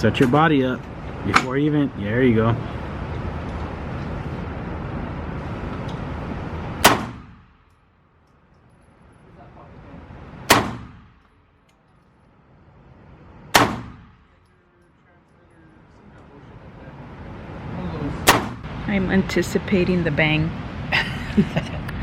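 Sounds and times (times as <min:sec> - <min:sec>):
pistol shots: 0:06.8 - 0:07.6, 0:10.5 - 0:11.2, 0:13.5 - 0:14.3, 0:18.2 - 0:18.6.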